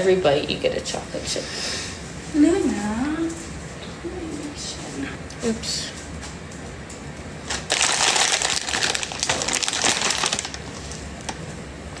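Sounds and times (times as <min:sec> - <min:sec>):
crinkling and rustling with clicks: 0:06.2 - 0:11.6.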